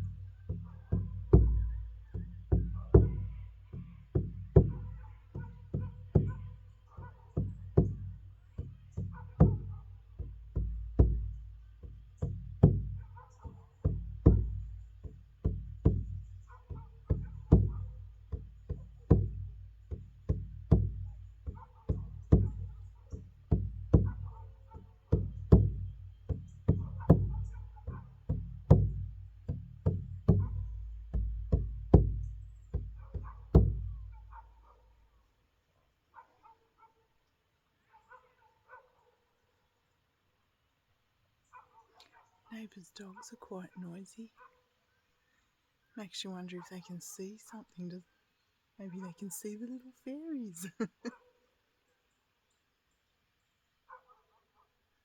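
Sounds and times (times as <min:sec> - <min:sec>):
frame drum deep booming strikes: 0:00.0 - 0:06.5, 0:07.4 - 0:13.1, 0:13.8 - 0:16.5, 0:17.1 - 0:24.4, 0:25.1 - 0:34.1.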